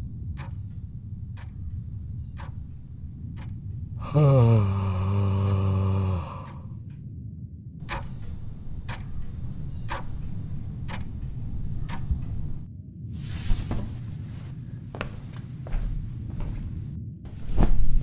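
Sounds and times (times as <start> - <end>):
short regular ticks: 0.0 - 4.0, 7.8 - 12.7
voiced huh falling in pitch: 4.0 - 6.7.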